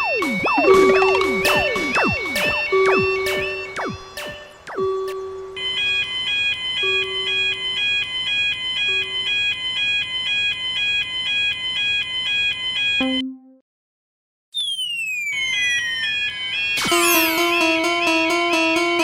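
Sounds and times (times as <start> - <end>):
falling whistle glides: 0.0 - 5.0, 14.6 - 17.7.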